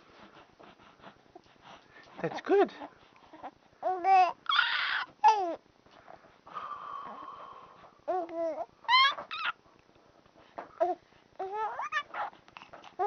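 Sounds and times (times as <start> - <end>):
baby cooing and squealing: 3.3 - 5.6, 8.1 - 9.6, 10.8 - 12.3.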